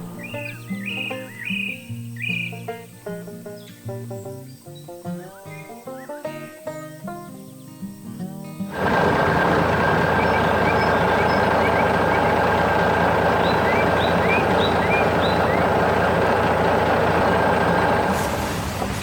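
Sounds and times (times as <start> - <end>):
faint bird chirps: 0.1 - 2.7, 10.0 - 16.6
heavy vehicle engine running: 8.7 - 19.0.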